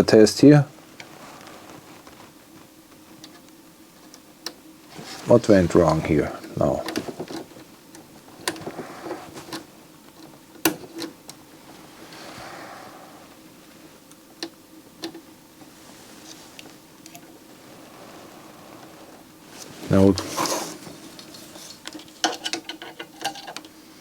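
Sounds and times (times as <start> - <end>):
faint steady hum: 0.0 - 24.0
tools clicking and tapping on table: 21.8 - 23.7.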